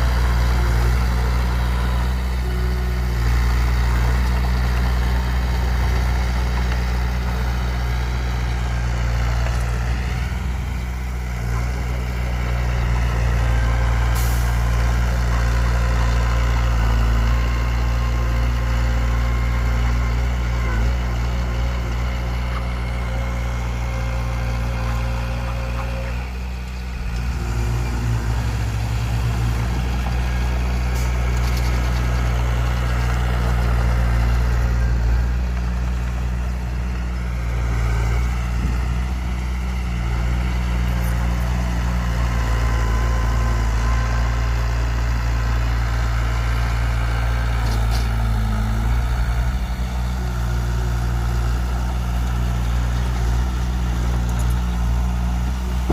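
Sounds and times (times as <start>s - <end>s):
heavy diesel engines humming: 0.0s - 55.9s.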